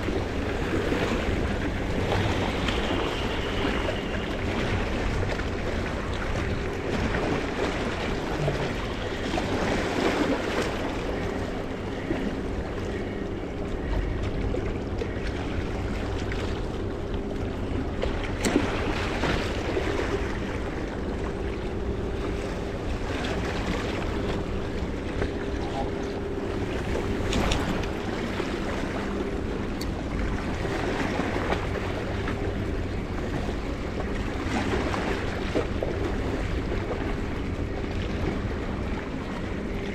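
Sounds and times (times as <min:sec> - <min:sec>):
low engine hum: 0:00.0 - 0:39.9
sea water washing on rocks: 0:23.2 - 0:37.5
wind on microphone: 0:23.3 - 0:32.0.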